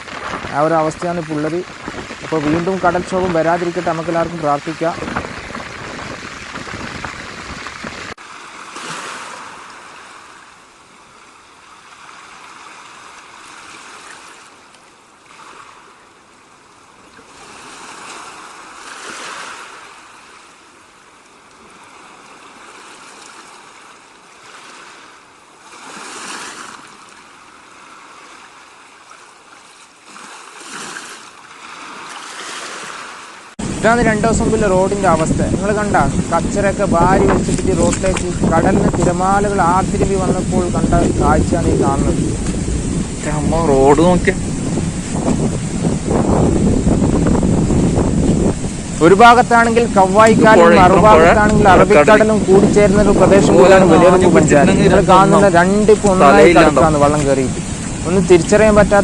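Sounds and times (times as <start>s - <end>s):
wind buffeting microphone: 0.0s - 8.2s, 33.6s - 59.0s
sea surf breaking: 0.0s - 59.0s.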